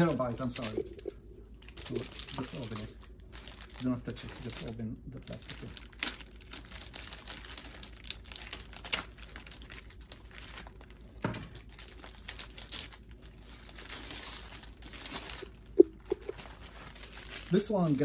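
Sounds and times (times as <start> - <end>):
plastic packaging crinkling: 0.0 - 18.0.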